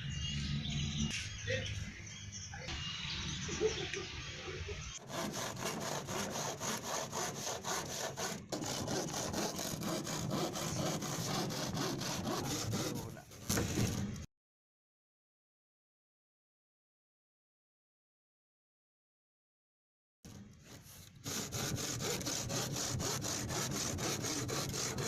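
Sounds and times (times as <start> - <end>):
hand saw cutting wood: 5.0 - 13.8, 21.2 - 25.0.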